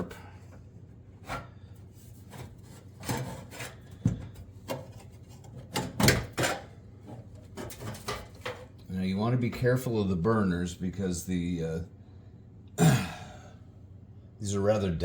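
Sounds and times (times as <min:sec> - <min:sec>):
scraping of stove parts: 0:01.2 - 0:08.8.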